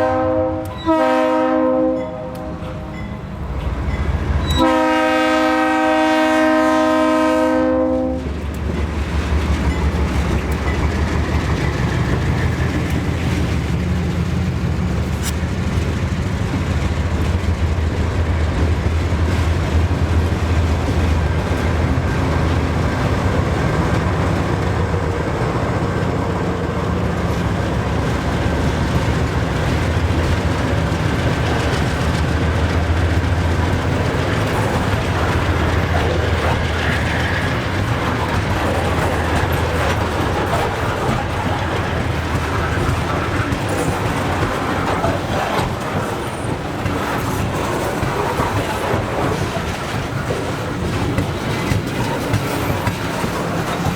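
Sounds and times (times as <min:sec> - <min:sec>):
locomotive air horn chord: 0:00.0 - 0:02.9, 0:04.5 - 0:08.3
locomotive engines droning: 0:00.0 - 0:53.9
train cars rumbling on rails: 0:00.0 - 0:53.9.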